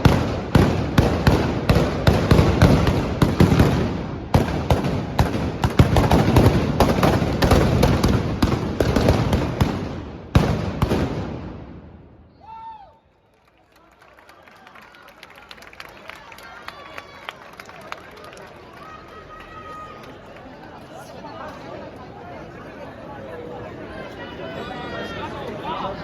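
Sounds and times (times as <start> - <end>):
blunderbuss shots echoing: 0.0 - 12.2.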